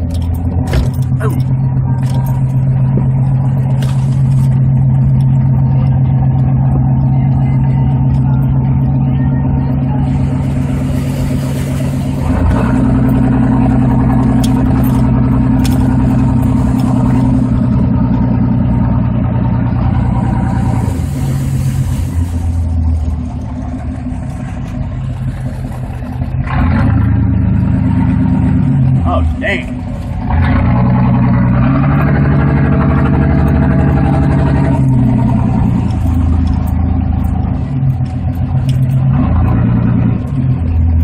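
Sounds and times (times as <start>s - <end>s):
vehicle engine revving under load: 0.0s - 41.0s
hissing rush: 20.4s - 23.2s.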